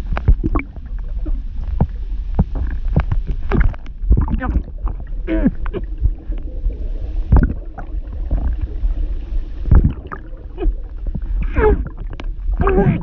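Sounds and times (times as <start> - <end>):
muffled water gurgling and sloshing: 0.0 - 13.0.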